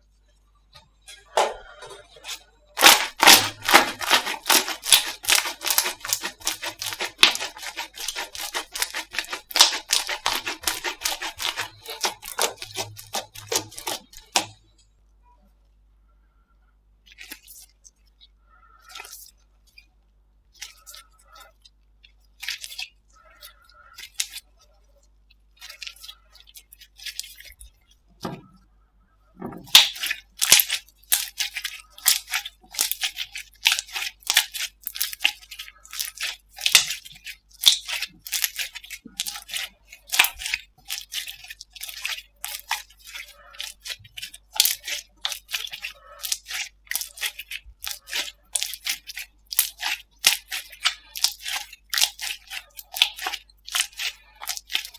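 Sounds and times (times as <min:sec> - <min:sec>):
slime crackling and popping: 0:02.8 - 0:14.6, 0:29.7 - 0:54.9.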